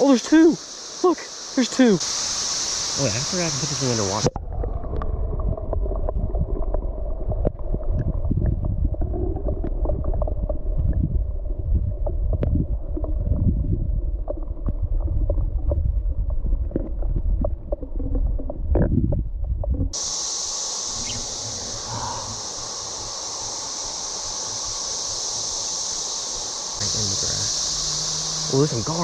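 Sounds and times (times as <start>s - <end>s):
low underwater water rumble: 4.0s - 26.0s.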